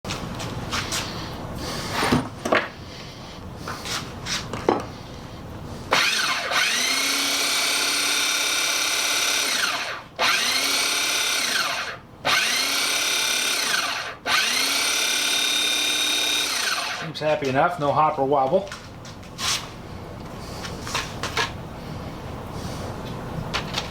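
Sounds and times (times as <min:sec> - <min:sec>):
grinding wheel motor whining: 0:06.0 - 0:17.2.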